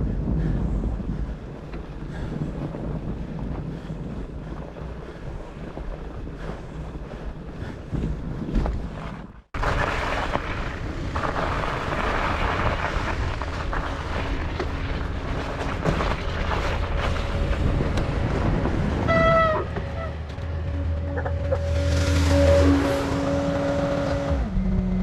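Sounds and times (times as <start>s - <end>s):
wind on microphone: 0.0s - 9.5s, 16.0s - 25.0s
bike riding through snow: 0.0s - 25.0s
low engine-like hum: 17.2s - 25.0s.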